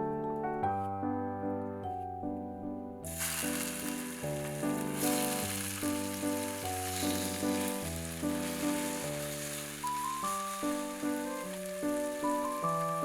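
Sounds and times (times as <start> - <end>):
waltz music: 0.0 - 13.0
food sizzling in frying pan: 3.1 - 13.0.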